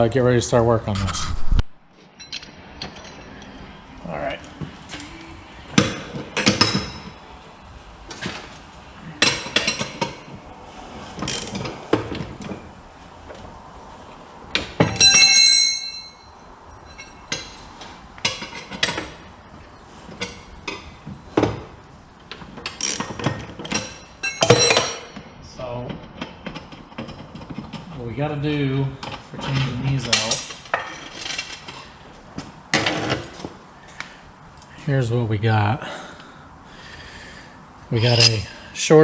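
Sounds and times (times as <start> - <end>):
loud ringing metallic clang: 14.8 - 17.6, 24.0 - 25.2
tools and metal parts knocking: 22.6 - 25.2.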